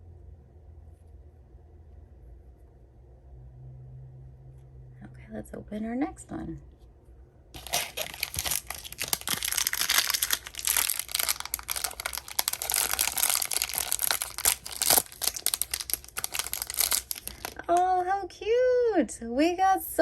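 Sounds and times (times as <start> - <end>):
plastic wrapper tearing and crinkling: 7.6 - 17.8.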